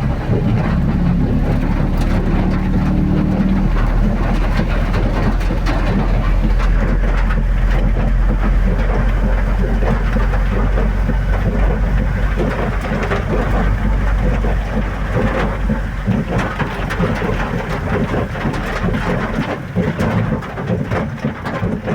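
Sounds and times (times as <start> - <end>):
moving vehicle rumble: 0.0 - 21.9
rain falling: 0.0 - 21.9.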